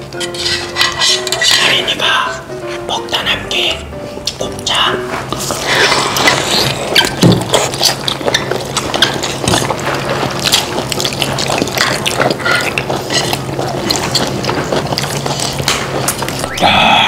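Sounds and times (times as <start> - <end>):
wet chewing and lip-smacking: 4.2 - 16.6.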